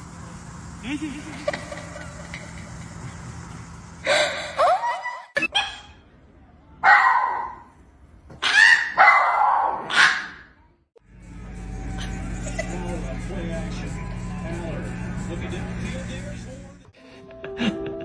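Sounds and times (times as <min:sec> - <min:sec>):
dog barking and yelping: 0:08.4 - 0:10.5.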